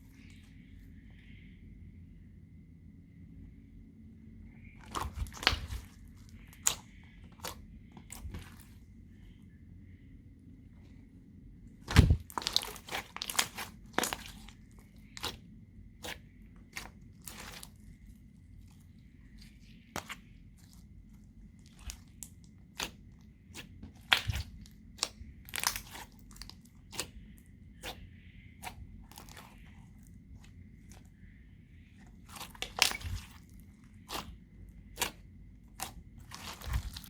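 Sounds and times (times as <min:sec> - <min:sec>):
slime squishing and popping: 0:04.8 - 0:08.7, 0:11.9 - 0:14.5, 0:16.0 - 0:17.7, 0:21.6 - 0:27.2, 0:32.2 - 0:37.0.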